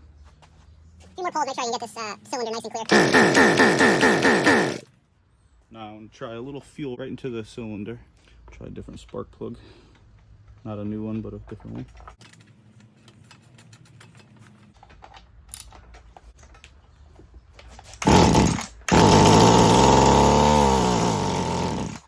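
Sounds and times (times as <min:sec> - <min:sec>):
small two-stroke engine running: 0:02.8 - 0:04.9, 0:18.0 - 0:22.0
handling clicks and rattles: 0:10.0 - 0:19.0.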